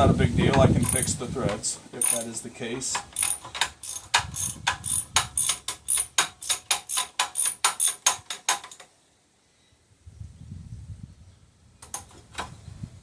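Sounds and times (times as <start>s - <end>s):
ratchet wrench clicking: 0.6s - 1.1s, 2.0s - 8.8s.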